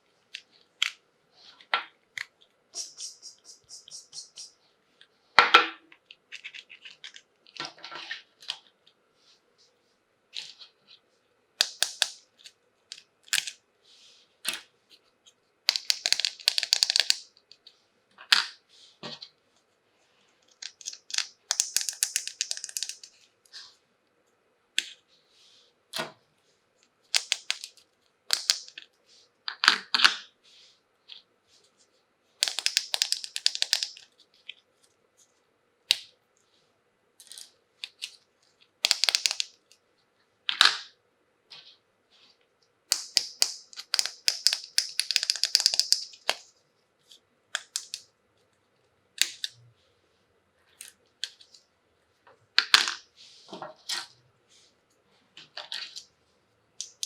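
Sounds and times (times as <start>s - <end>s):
small sharp clicks and taps: 27.1s - 28.9s, 32.4s - 34.0s, 38.8s - 39.8s, 42.9s - 46.5s.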